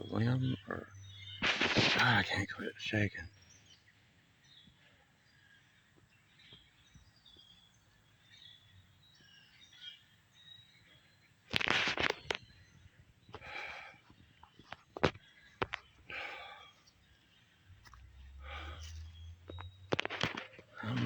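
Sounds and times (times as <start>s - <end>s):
small birds chirping: 0.0s - 21.0s
loud rustling crunch: 0.6s - 2.6s, 11.5s - 21.0s.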